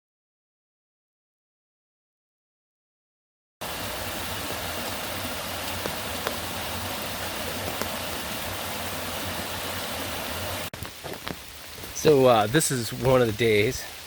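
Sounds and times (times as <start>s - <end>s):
rushing water hiss: 3.6s - 14.0s
raindrops pattering on a surface: 4.9s - 8.6s, 10.7s - 14.0s.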